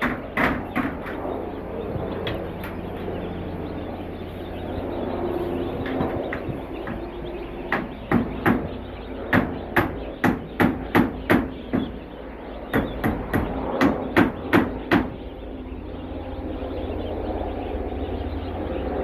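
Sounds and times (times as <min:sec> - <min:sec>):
sharp knocks: 0:00.0 - 0:01.4, 0:05.7 - 0:12.1, 0:12.7 - 0:15.3.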